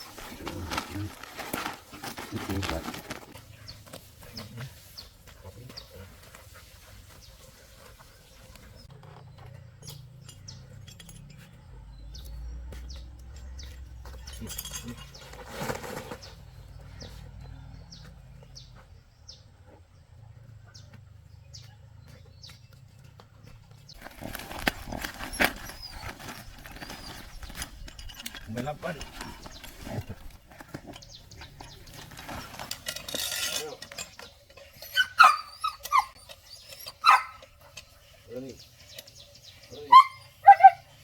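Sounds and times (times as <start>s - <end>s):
birds chirping: 0.0s - 41.0s.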